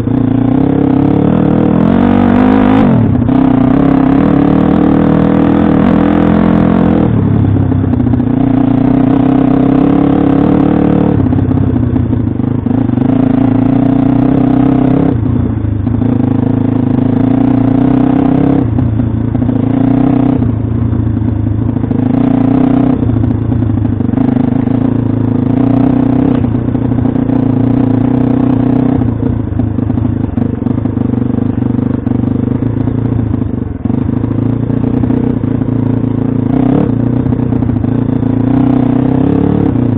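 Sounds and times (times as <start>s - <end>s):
motorbike engine revving: 0.0s - 39.9s.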